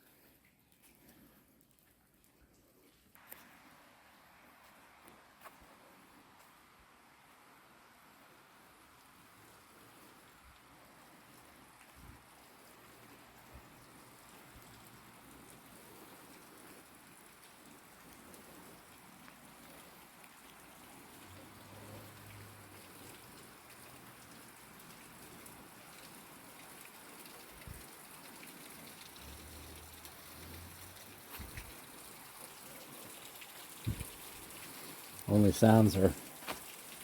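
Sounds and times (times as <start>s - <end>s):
soft footsteps on trail: 0.0s - 7.6s, 8.4s - 15.7s, 36.4s - 36.7s
running water: 3.2s - 37.0s.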